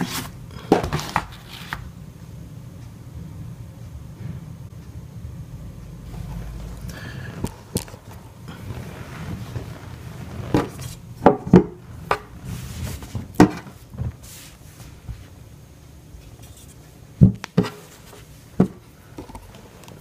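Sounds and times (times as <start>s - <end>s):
rubbing and shuffling: 6.1s - 11.1s, 12.1s - 15.4s.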